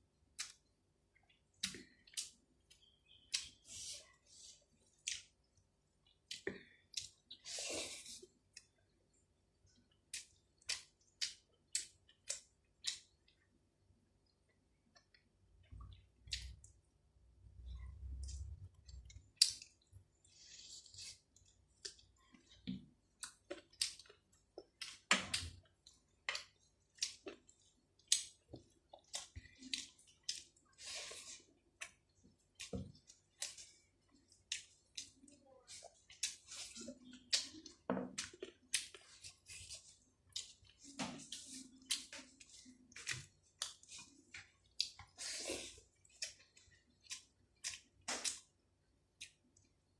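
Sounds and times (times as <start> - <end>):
wet chewing: 17.8 - 49.8
lip smacks and mouth clicks: 18.2 - 19.9.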